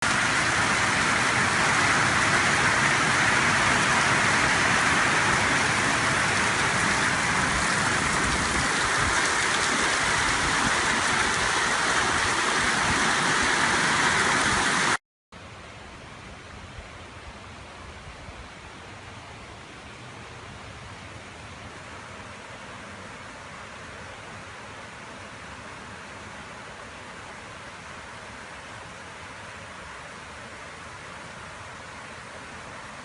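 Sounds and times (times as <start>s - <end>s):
loud rushing water: 0.0s - 33.0s
quiet hiss: 15.4s - 33.0s.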